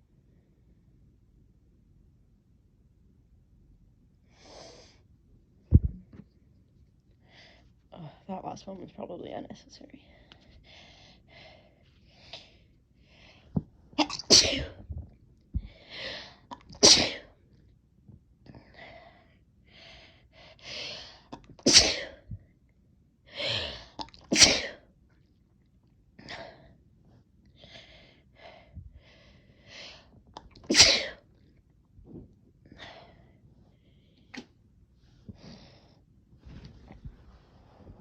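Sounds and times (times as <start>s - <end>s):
person sneezing: 14.0s - 14.8s, 16.8s - 17.3s, 21.7s - 22.2s, 24.3s - 24.8s, 30.7s - 31.2s.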